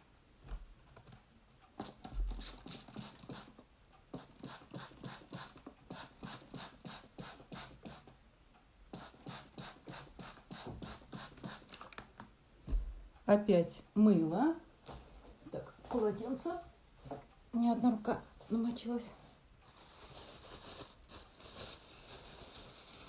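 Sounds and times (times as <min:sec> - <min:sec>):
spray bottle squirting: 0:01.8 - 0:08.1, 0:09.0 - 0:11.9.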